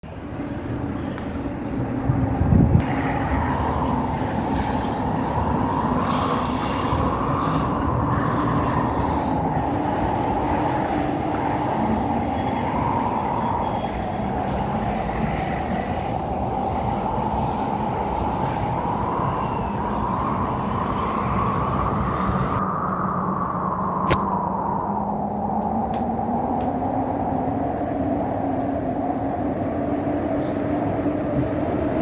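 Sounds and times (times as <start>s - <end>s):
wind rumbling on microphone: 0.0s - 32.0s
wind whistle: 0.1s - 32.0s
gust thump: 24.0s - 24.4s.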